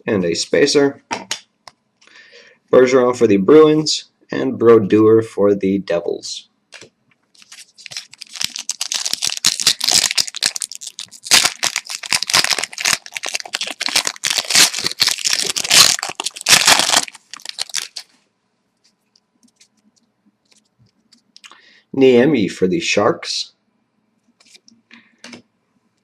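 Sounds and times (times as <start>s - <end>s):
foil wrapper tearing and crinkling: 7.4s - 18.1s.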